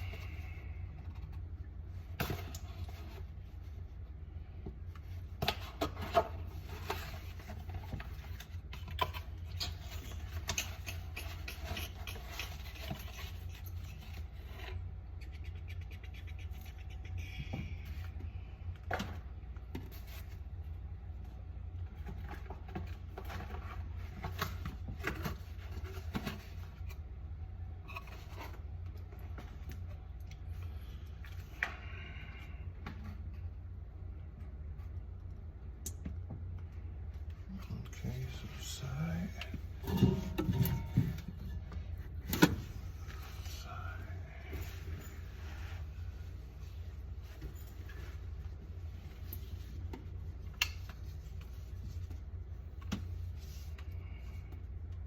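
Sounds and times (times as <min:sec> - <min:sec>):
hands handling parts and tools: 0:39.5 - 0:43.4.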